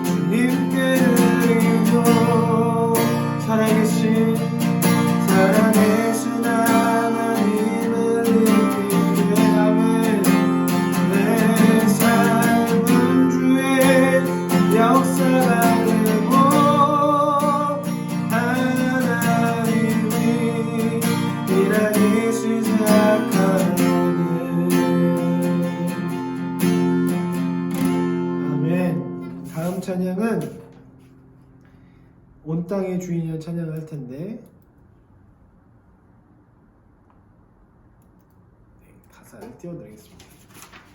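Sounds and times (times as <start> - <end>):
strummed acoustic guitar: 0.0 - 32.0.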